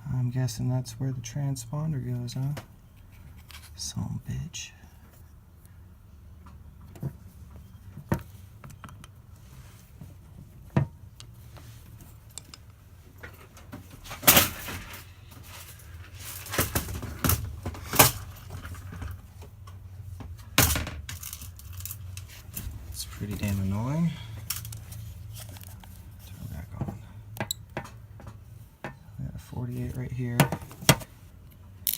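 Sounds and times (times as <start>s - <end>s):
sharp knocks and clatters: 26.8s - 29.0s.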